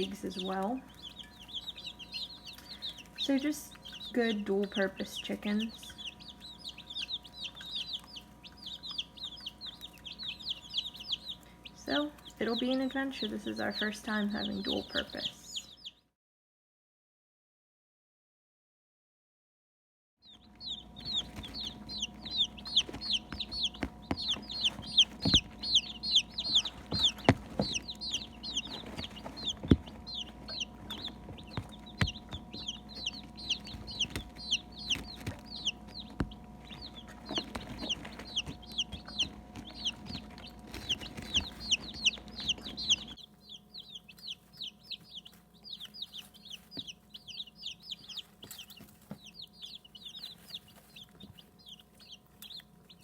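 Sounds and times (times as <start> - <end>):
steady low hum: 0.0 - 15.8, 20.3 - 53.0
chicks peeping: 0.0 - 16.1, 20.2 - 53.0
light taps: 21.2 - 43.2.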